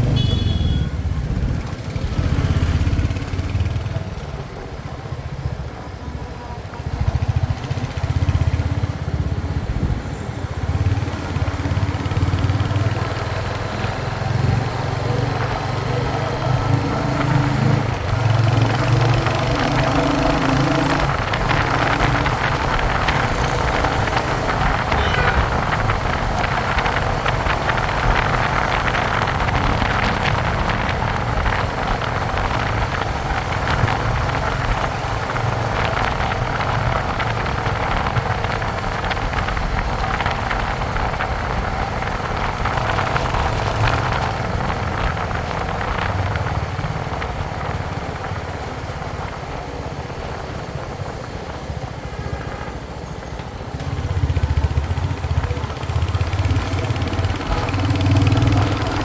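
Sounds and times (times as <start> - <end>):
motorcycle engine running: 0.0 - 52.7, 53.4 - 59.0.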